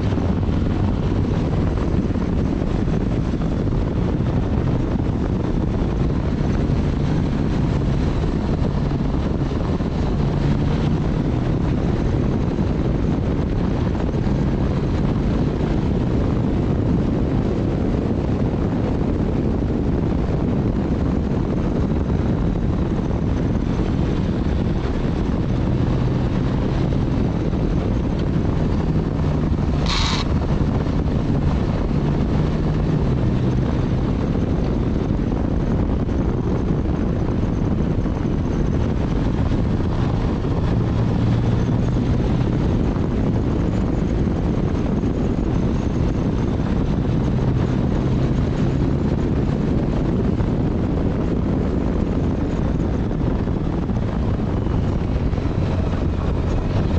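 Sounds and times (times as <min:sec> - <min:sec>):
motorcycle engine hum: 0:00.0 - 0:56.9
wind and road rush: 0:00.0 - 0:56.9
brief sharp high sound: 0:29.8 - 0:30.3.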